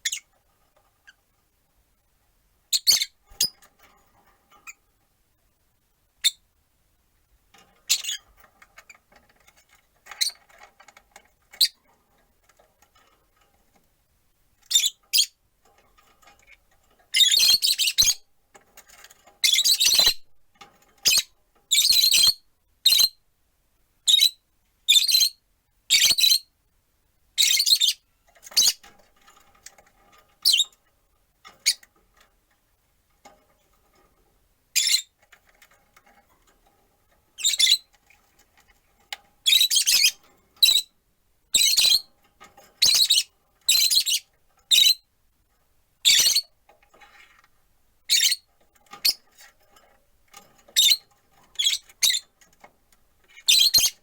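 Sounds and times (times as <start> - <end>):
lovebirds shrill calls: 42.8 - 45.0, 53.4 - 54.0.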